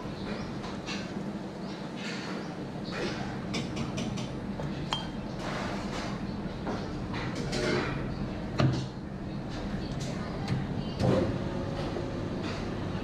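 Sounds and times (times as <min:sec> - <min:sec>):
dishes and utensils clinking: 0:04.9 - 0:08.1.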